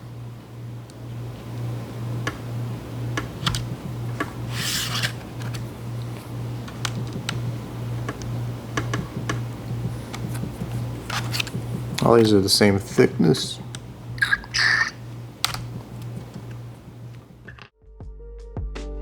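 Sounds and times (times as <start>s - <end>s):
steady low hum: 0.0s - 17.7s
plastic picks scraping and clicking: 10.1s - 12.4s.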